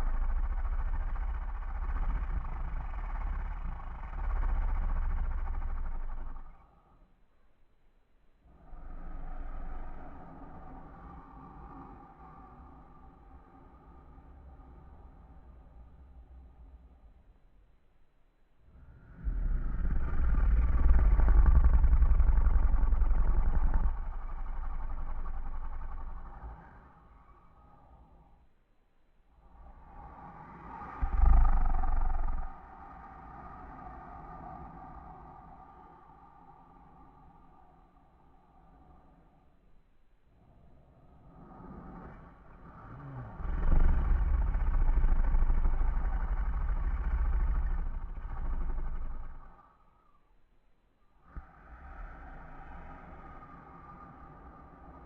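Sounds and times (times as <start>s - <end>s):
toy raspy buzzing snore: 0.0s - 6.6s, 19.2s - 27.0s, 30.8s - 32.6s, 42.6s - 49.6s
toy snoring through small speaker: 0.0s - 7.0s, 8.4s - 17.0s, 18.7s - 28.4s, 29.4s - 39.6s, 40.4s - 49.9s, 51.2s - 55.0s.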